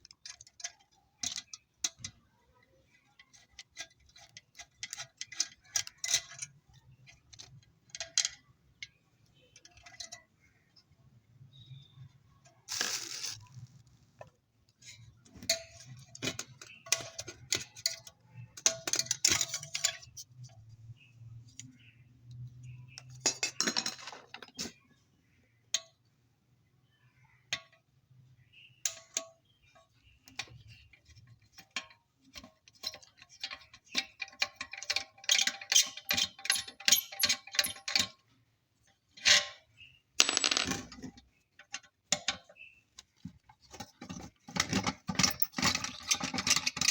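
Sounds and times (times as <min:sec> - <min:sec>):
metal parts clinking and scraping: 0:32.8 - 0:38.2, 0:40.2 - 0:41.2, 0:44.1 - 0:46.9.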